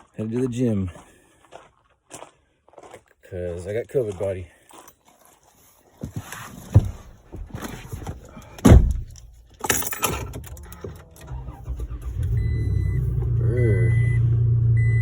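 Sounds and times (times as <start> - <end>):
truck door shutting: 6.7 - 13.9
keys jangling: 8.4 - 11.0
truck engine idling: 10.3 - 15.0.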